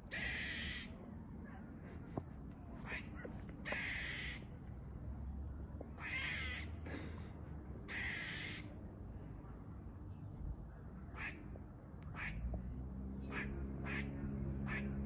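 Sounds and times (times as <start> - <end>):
squirrel alarm calls: 0.1 - 0.9, 2.8 - 4.4, 6.0 - 6.7, 7.9 - 8.6.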